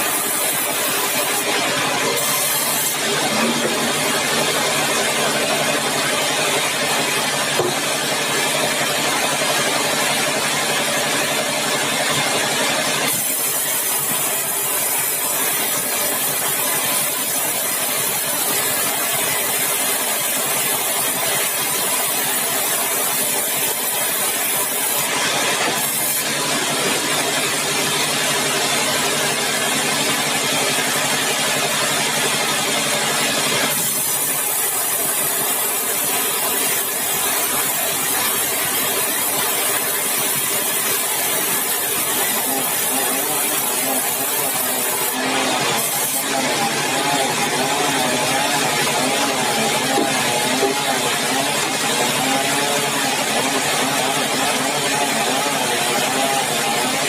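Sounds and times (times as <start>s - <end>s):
loud machinery hiss: 0.0s - 6.0s.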